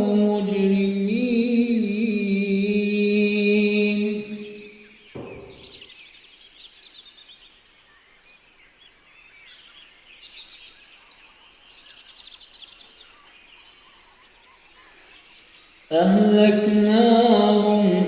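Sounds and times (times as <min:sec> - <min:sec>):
small birds chirping: 0:00.0 - 0:18.0
short knock: 0:05.2 - 0:05.9.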